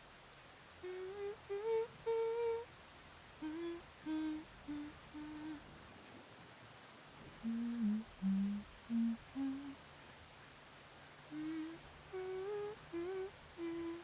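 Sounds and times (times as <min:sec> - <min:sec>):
person humming a lullaby: 0:00.8 - 0:02.7, 0:03.4 - 0:05.6, 0:07.4 - 0:09.9, 0:11.3 - 0:14.0.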